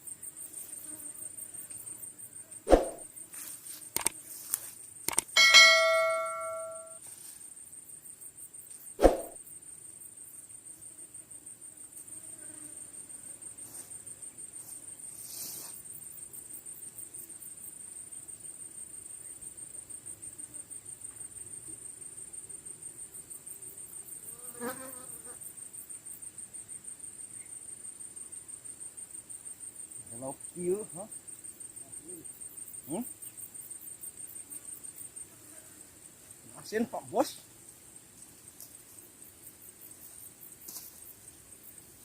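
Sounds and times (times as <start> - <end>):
insects chirring: 0.0 - 42.0
sharp knock: 5.1 - 7.0
metallic ringing tone: 5.4 - 7.0.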